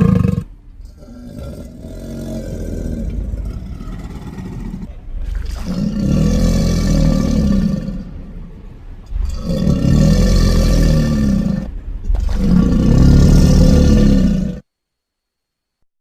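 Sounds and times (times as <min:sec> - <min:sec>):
deep monster roars: 0:00.0 - 0:14.6.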